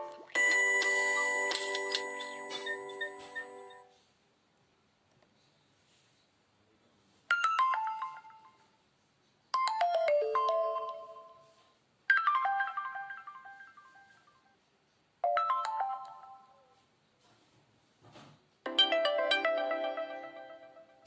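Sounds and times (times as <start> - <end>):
phone chime tone: 0.0 - 3.9.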